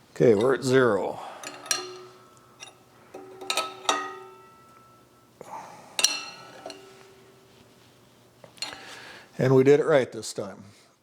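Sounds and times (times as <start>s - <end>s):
metal tools clinking on engine parts: 0.2s - 0.8s, 1.4s - 5.1s, 6.0s - 7.6s, 8.6s - 9.0s.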